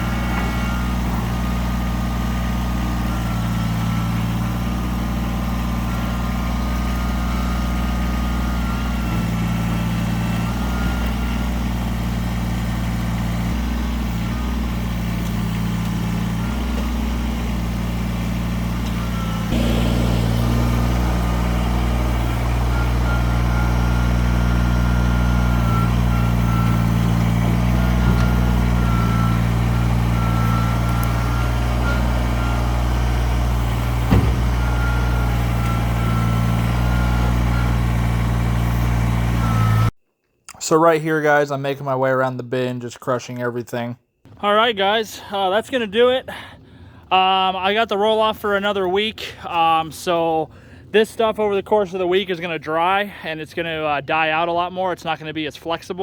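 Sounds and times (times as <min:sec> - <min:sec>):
tractor diesel engine running: 0:00.0 - 0:40.0, 0:44.3 - 0:54.7.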